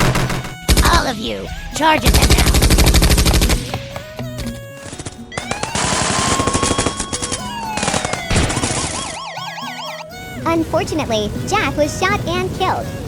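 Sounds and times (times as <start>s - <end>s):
rapid machine-gun fire: 0.0s - 1.0s, 2.1s - 3.7s, 5.4s - 9.2s
background music: 0.0s - 13.0s.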